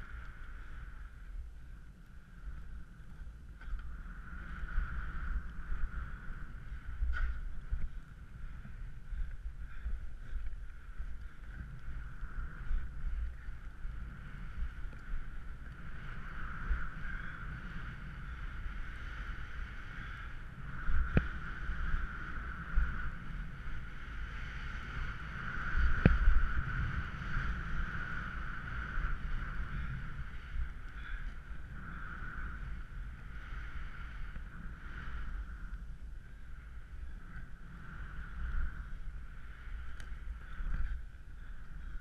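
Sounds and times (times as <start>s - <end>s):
rumble sliding over snow: 0.0s - 42.0s
wind rushing on microphone: 0.0s - 42.0s.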